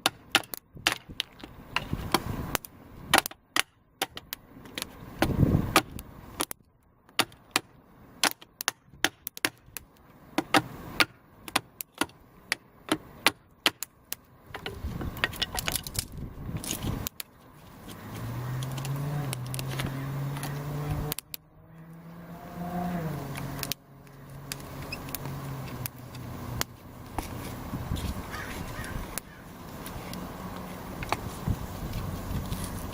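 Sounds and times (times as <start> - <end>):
steady engine hum: 9.6 - 32.9.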